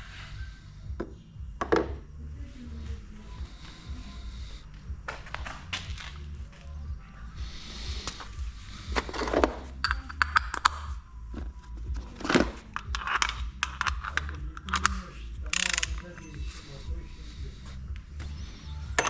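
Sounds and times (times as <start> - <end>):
low steady hum: 0.0 - 19.0
metallic clinks and knocks: 9.2 - 11.0, 12.8 - 16.6.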